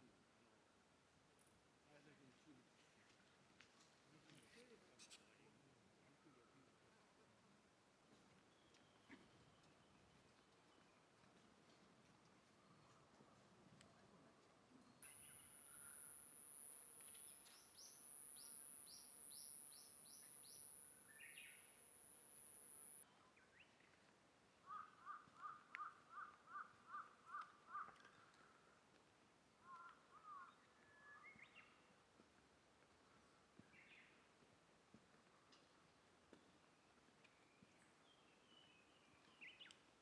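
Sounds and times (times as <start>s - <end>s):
birds whistling calls: 15.0s - 23.0s
faint high hiss: 15.0s - 23.0s.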